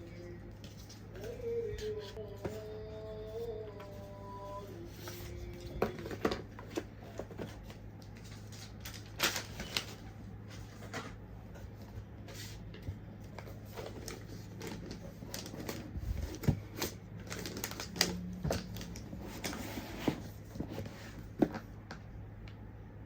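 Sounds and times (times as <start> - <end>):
steady low hum: 0.0 - 23.0
packaging clicks and rustles: 5.6 - 11.2, 13.2 - 19.6.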